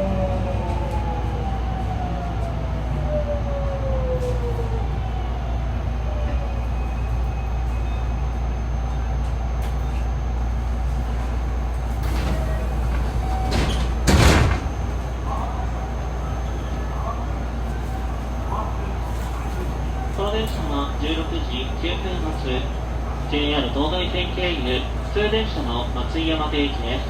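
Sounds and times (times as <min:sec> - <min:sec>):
train interior hum: 0:00.0 - 0:27.0.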